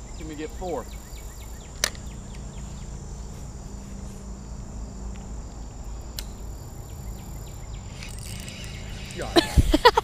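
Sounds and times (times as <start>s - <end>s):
crickets chirring: 0.0s - 10.0s
sharp click: 1.8s - 2.4s, 6.2s - 6.4s.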